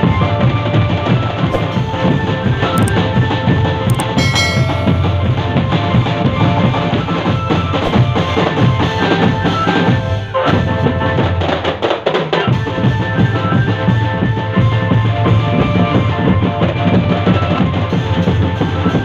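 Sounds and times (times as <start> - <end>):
held melody: 3.9 - 6.6.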